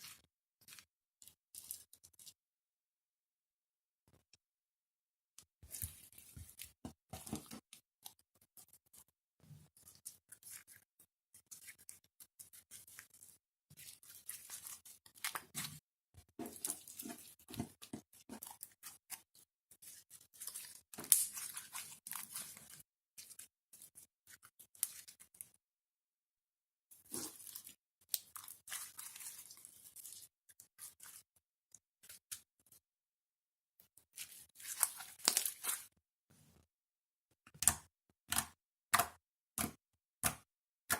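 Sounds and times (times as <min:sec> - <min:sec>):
slime squishing crackles: 0:12.7 - 0:23.9, 0:27.1 - 0:31.2, 0:34.2 - 0:35.9.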